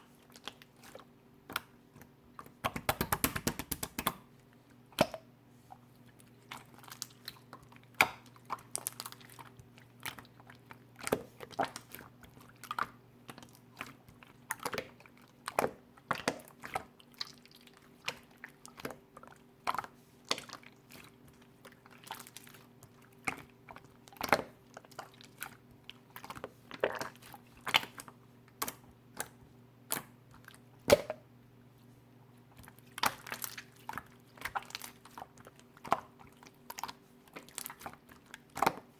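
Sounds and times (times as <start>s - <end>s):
slime squishing and popping: 32.5s - 38.9s.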